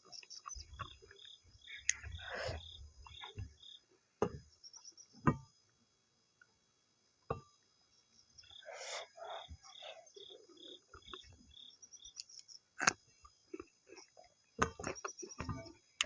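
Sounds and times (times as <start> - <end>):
eating and mouth sounds: 0.0 - 2.7, 12.1 - 16.0
high insect chirp: 0.0 - 5.7, 7.4 - 16.0.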